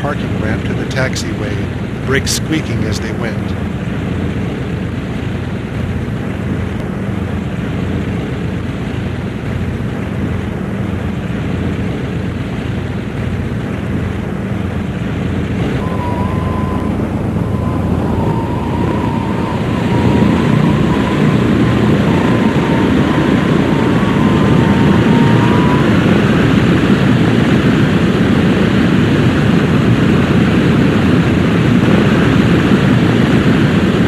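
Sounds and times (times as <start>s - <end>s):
aircraft piston engines running: 0.0s - 34.0s
high brake squeal: 15.8s - 26.6s.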